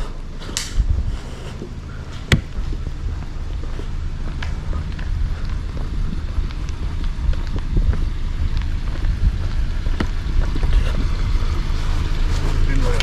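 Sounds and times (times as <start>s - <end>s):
car rumbling: 0.0s - 13.0s
sharp clicks and knocks: 2.3s - 2.6s.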